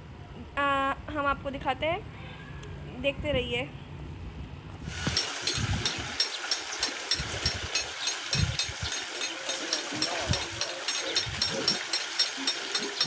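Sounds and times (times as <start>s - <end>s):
rushing hiss: 4.8s - 13.0s
regular clacking: 5.1s - 13.0s.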